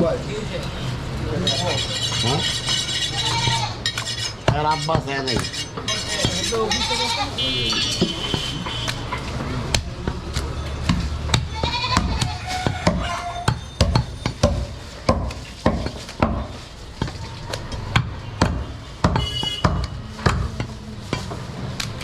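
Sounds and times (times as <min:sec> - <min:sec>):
goat bleating: 0:03.0 - 0:03.8, 0:06.6 - 0:07.4, 0:11.5 - 0:12.6
cleaver chopping meat: 0:08.0 - 0:21.4.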